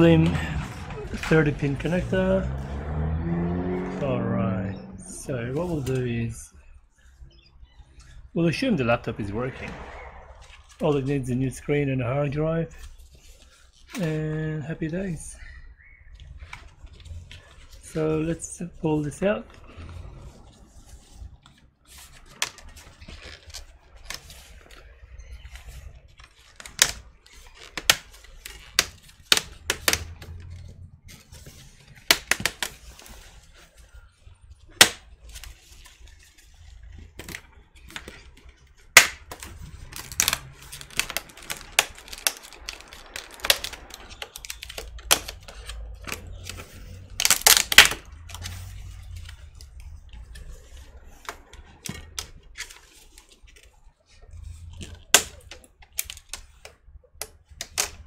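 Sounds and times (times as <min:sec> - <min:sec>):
plastic clips snapping: 0:27.6 - 0:30.4, 0:31.9 - 0:32.8, 0:34.8 - 0:35.0, 0:39.0 - 0:48.5, 0:54.8 - 0:58.0.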